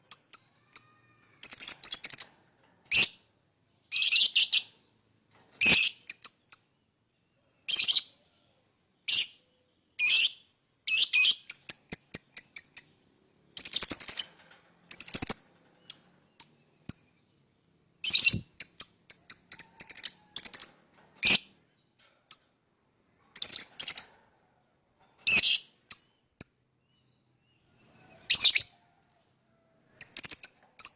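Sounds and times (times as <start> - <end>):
lovebird chirping shrilly: 18.0 - 19.2.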